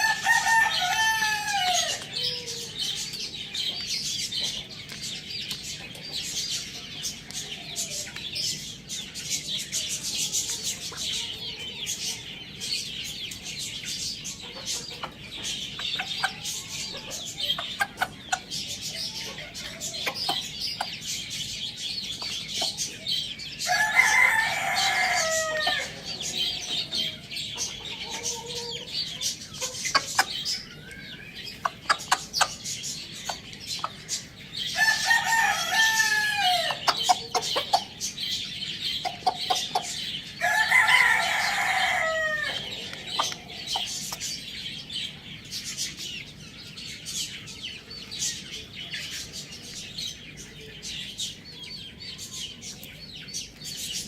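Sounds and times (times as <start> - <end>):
rooster crowing: 0.0 - 2.6, 23.6 - 27.1, 34.8 - 36.8, 40.4 - 42.8
hens clucking: 14.2 - 21.5, 23.7 - 45.2.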